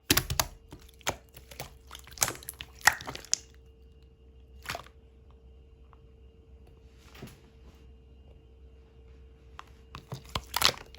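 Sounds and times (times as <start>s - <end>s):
slime squished by hand: 0.0s - 3.6s, 4.6s - 5.0s, 10.0s - 10.9s.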